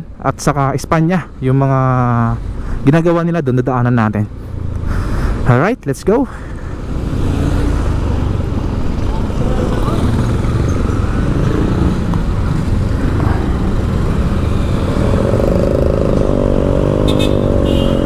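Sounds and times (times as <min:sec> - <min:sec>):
street traffic rumble: 0:00.0 - 0:18.0
vehicle engine running nearby: 0:06.3 - 0:18.0.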